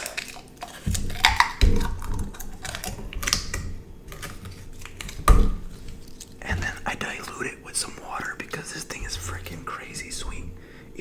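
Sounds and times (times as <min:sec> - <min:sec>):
dull knocks: 0:00.8 - 0:07.1.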